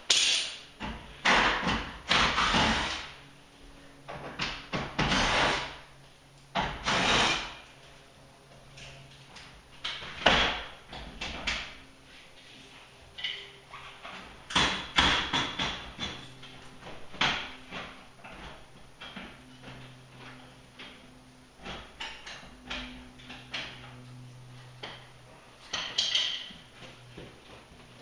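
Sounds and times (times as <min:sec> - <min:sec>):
metal knocks and scraping: 0:13.1 - 0:27.4.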